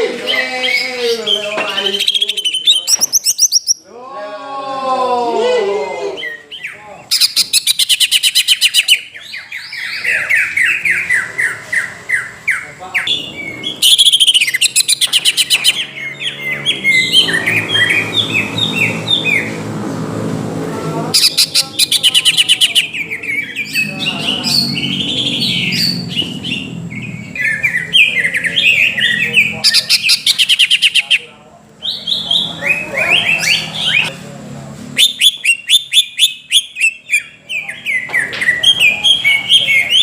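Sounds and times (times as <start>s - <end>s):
bird song with rapid trills: 0.2s - 3.8s, 6.3s - 19.6s.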